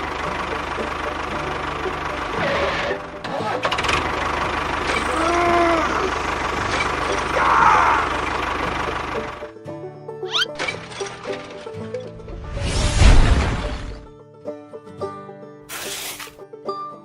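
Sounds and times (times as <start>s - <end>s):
small engine chugging: 0.0s - 9.6s.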